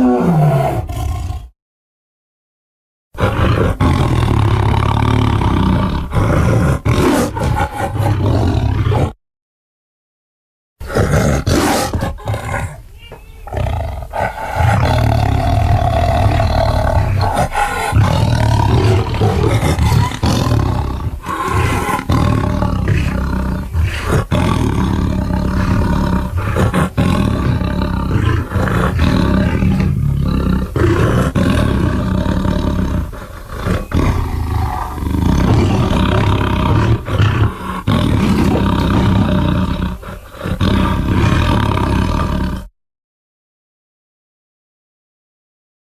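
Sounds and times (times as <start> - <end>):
dinosaur roars and growls: 0.0 - 1.5, 13.4 - 42.7.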